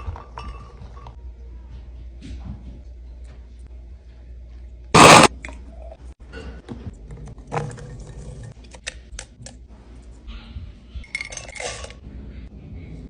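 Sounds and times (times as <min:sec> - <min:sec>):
kitchen utensils and dishes clinking: 0:00.0 - 0:01.2, 0:11.0 - 0:12.0.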